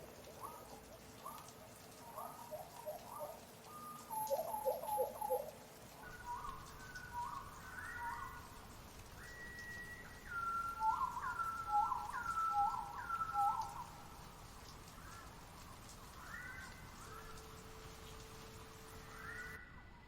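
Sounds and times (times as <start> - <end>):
bird whistling: 9.2 - 13.9.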